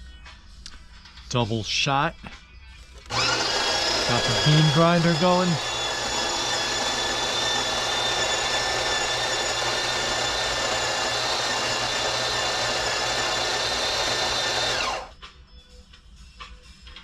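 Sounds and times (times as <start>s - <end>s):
coffee grinder motor whine: 3.0s - 15.1s.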